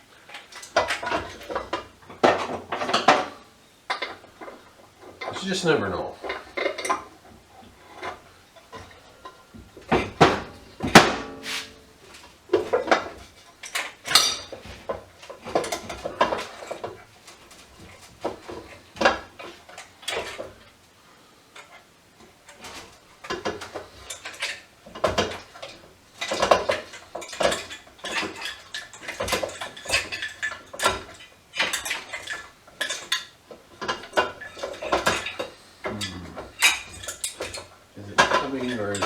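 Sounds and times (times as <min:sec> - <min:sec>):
metal parts and tools clinking: 0:12.6 - 0:16.9.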